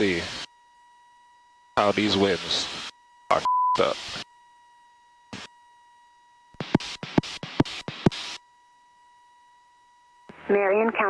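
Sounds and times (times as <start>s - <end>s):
faint steady radio tone: 0.0s - 11.0s
radio clicks and crackling bursts: 1.8s - 4.3s, 5.3s - 5.5s, 6.6s - 8.4s.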